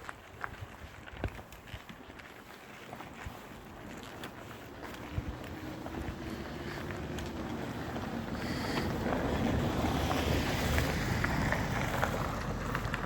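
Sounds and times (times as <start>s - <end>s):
wind buffeting microphone: 4.8s - 13.0s.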